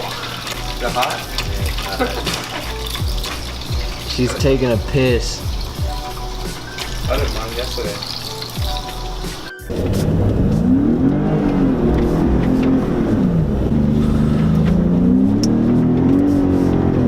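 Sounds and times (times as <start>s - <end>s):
vehicle engine revving: 9.7s - 17.0s.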